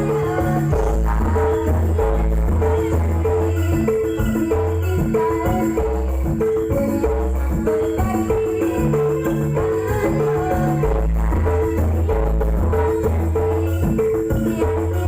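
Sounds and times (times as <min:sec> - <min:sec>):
gamelan music through loudspeakers: 0:00.0 - 0:15.0
heavy bass: 0:00.0 - 0:15.0.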